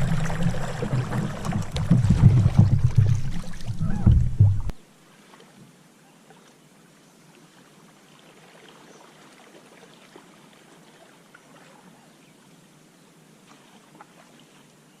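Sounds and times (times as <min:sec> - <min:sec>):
water drips and trickles: 0:00.0 - 0:04.8
soft wash of water: 0:00.0 - 0:15.0.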